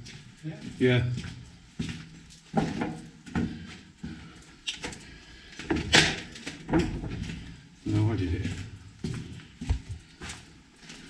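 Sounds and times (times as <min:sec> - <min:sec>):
footsteps walking: 0:00.0 - 0:11.0.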